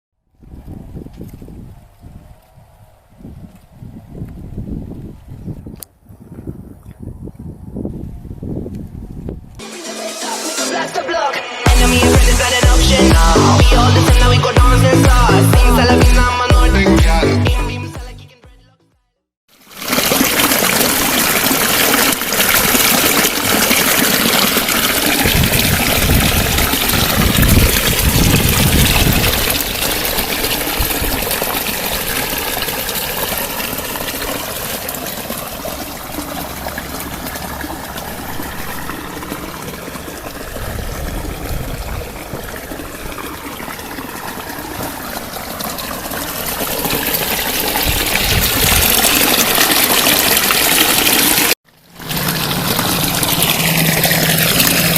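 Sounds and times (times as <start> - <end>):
water trickling and gurgling: 19.5 - 54.9.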